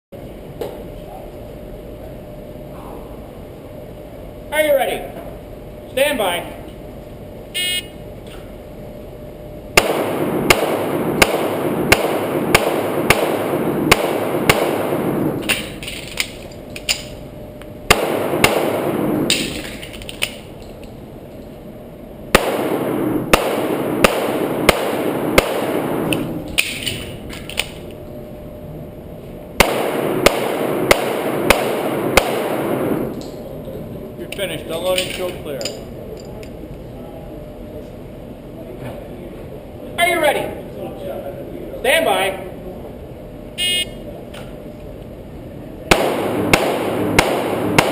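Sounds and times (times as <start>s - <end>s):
rapid pistol shots: 9.8s - 17.1s, 17.9s - 20.5s, 22.3s - 27.8s, 29.6s - 33.2s, 45.9s - 47.9s.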